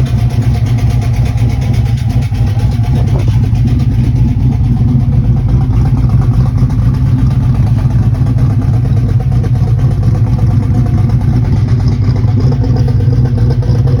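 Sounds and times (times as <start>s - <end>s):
engine running with ticking: 0.0s - 14.0s.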